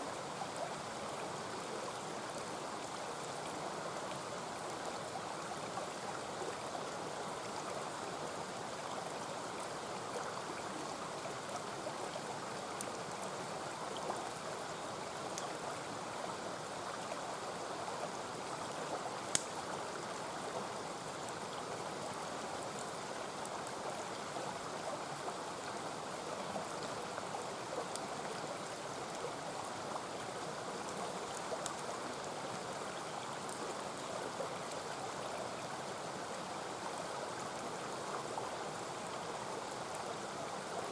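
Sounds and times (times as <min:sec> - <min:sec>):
campfire crackling and popping: 0:19.3 - 0:19.6.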